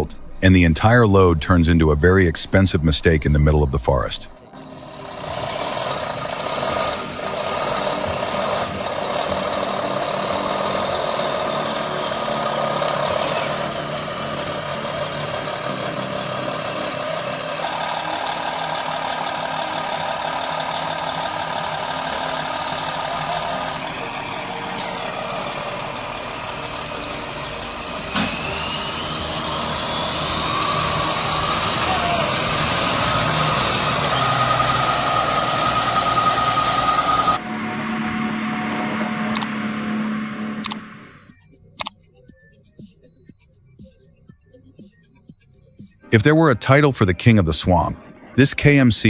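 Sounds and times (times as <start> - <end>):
truck engine running under load: 4.6 - 41.2
high-pitched whining: 4.6 - 41.4.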